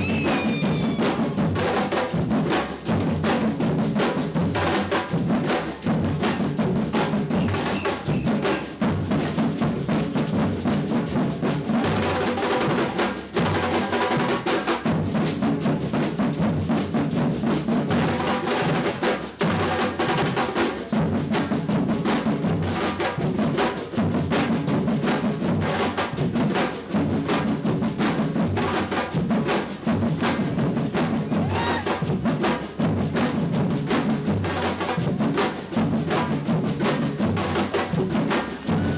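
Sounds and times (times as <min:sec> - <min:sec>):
bass drums: 0:00.0 - 0:03.8, 0:30.0 - 0:38.9
samba percussion band playing: 0:00.0 - 0:38.9.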